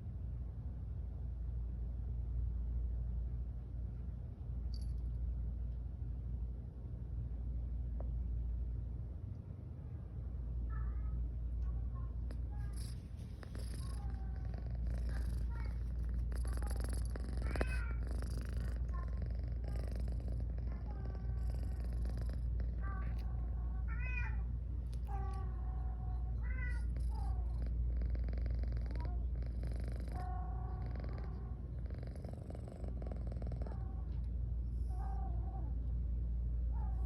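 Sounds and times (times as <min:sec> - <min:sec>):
cat purring: 0:12.0 - 0:34.3.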